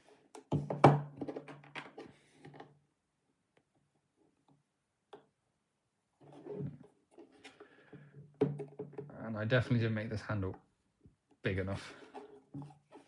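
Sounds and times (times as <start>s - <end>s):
plastic parts clicking and knocking: 0.2s - 2.8s, 6.7s - 9.2s
faint handling sounds: 6.2s - 9.1s, 10.5s - 13.0s.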